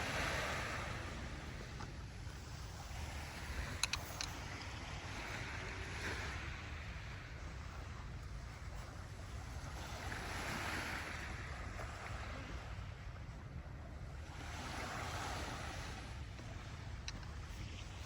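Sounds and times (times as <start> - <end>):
waves washing in: 0.0 - 18.0
wind rumble on microphone: 0.0 - 18.0.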